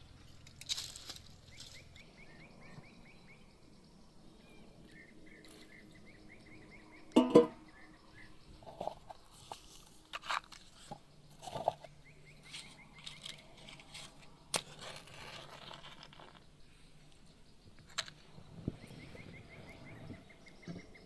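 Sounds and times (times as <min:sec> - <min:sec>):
insects or birds chirping: 0:00.0 - 0:21.0
corn husks crunching and tearing: 0:12.5 - 0:16.4.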